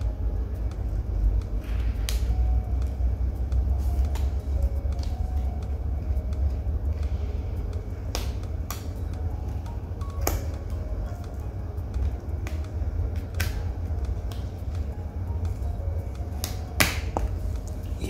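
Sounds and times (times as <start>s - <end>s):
background music: 0.0s - 18.0s.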